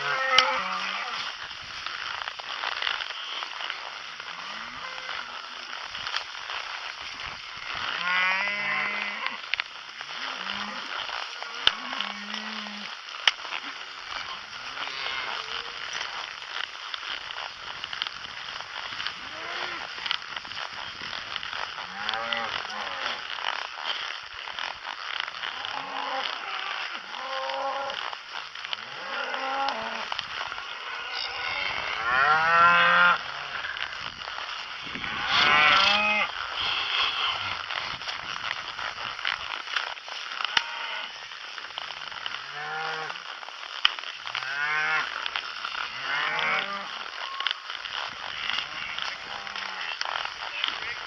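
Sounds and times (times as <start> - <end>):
cattle mooing: 0.0 - 1.3, 7.8 - 9.5, 10.2 - 13.0, 14.4 - 16.4, 21.8 - 23.3, 25.4 - 28.1, 28.7 - 34.0, 34.7 - 37.8, 42.2 - 43.3, 44.3 - 51.0.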